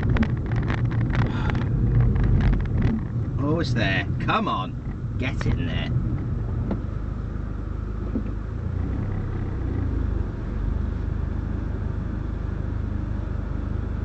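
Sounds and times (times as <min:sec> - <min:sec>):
car engine low rumble: 0:00.0 - 0:14.0.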